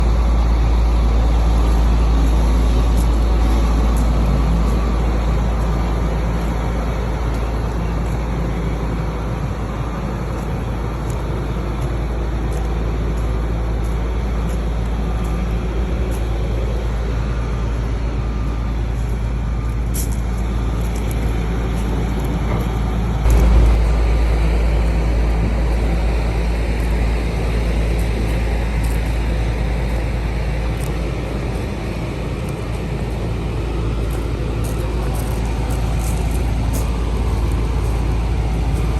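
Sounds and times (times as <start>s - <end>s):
road noise: 0.0s - 38.9s
vehicle low rumble: 0.0s - 38.9s
vehicle bump: 22.4s - 27.2s.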